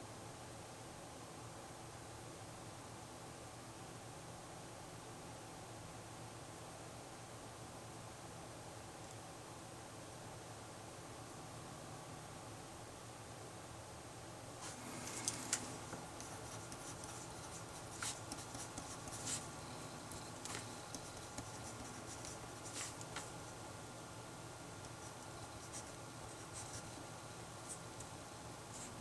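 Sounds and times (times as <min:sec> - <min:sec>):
faint room hum: 0:00.0 - 0:29.0
pen scratching on paper: 0:14.6 - 0:23.6, 0:24.8 - 0:29.0.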